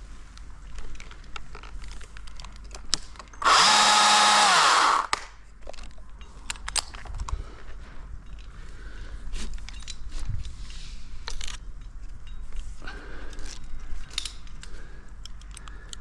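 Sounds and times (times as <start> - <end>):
chainsaw running: 3.4 - 5.2.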